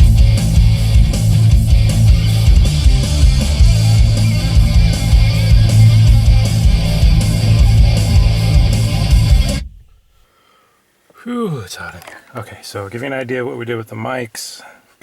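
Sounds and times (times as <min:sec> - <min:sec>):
rock music with guitar: 0:00.0 - 0:09.6.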